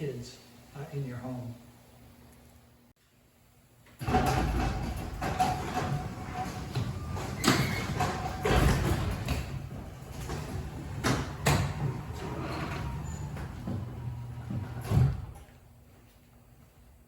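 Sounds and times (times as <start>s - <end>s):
garage door clanks and knocks: 4.0s - 15.5s
garage door opener humming: 4.0s - 15.7s.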